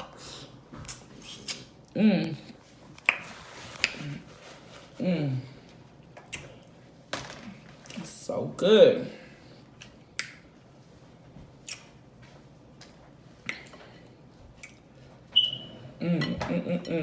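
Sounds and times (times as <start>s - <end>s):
wet mouth smacks eating: 6.2s - 6.7s, 11.6s - 12.0s, 14.6s - 14.9s.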